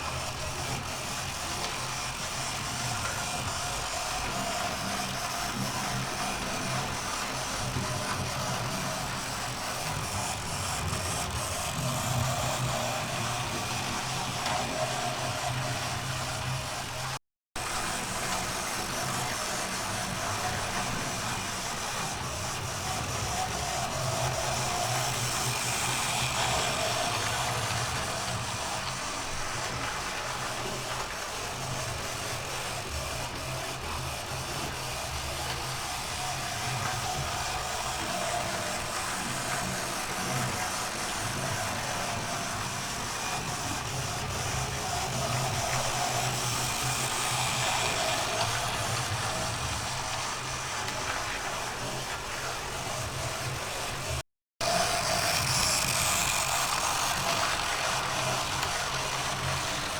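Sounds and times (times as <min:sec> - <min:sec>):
model train motor hum: 0:00.0 - 0:59.9
wheels rattling on rails: 0:00.0 - 0:59.9.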